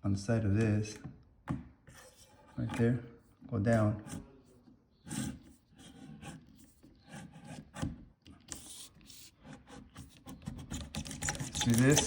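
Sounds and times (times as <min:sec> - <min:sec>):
brush scraping inside a hose: 0:11.2 - 0:12.0.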